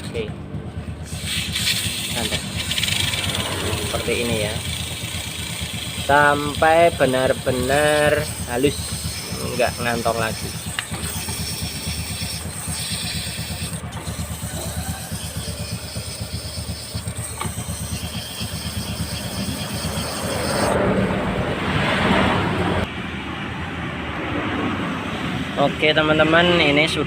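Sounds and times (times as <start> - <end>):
scooter engine running: 0.0 - 21.7
sandpaper rasping on metal: 1.0 - 20.8.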